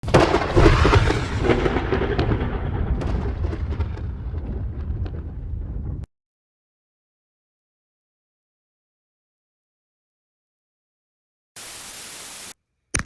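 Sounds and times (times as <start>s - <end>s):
fireworks bursts cracking: 0.0s - 5.3s.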